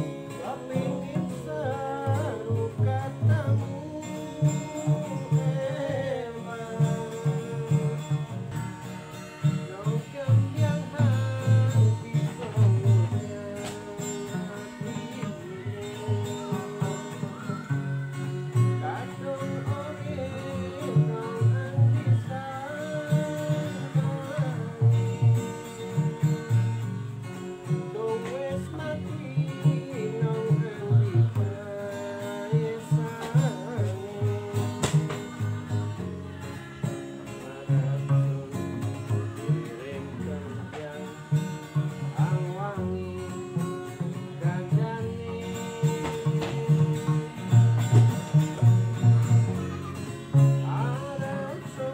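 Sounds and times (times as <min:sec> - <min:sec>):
person singing: 0:00.0 - 0:51.9
plucked strings: 0:00.0 - 0:51.9.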